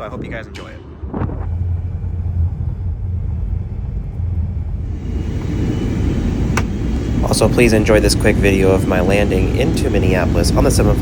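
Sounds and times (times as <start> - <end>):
wind buffeting microphone: 0.0 - 11.0.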